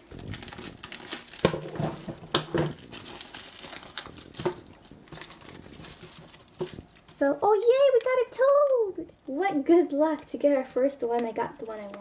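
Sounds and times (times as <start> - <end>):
bag tearing open: 0.0 - 6.8
plastic wrapper crinkling: 0.0 - 12.0.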